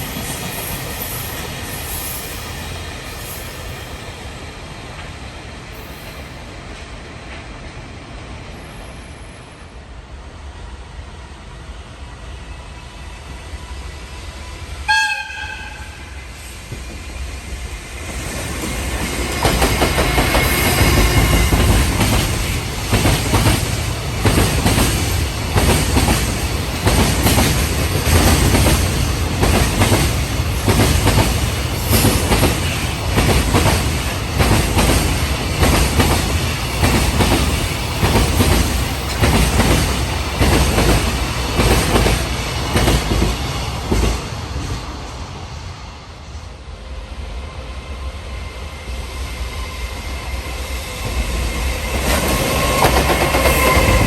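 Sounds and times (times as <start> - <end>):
freight train passing: 0.0 - 54.0
train horn blast: 14.9 - 16.2.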